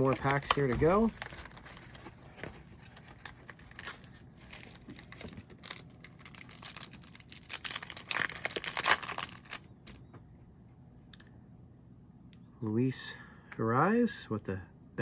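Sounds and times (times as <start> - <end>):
wrapper tearing and crinkling: 0.0 - 9.6.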